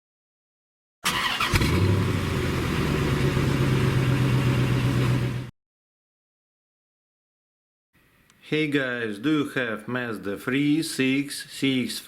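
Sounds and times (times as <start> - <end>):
vehicle engine starting and running: 1.0 - 5.5.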